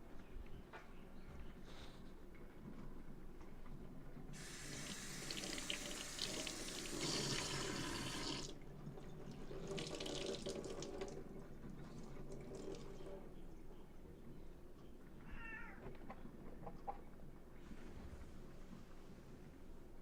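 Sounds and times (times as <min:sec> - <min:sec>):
coffee maker hissing and sputtering: 0:04.4 - 0:08.5.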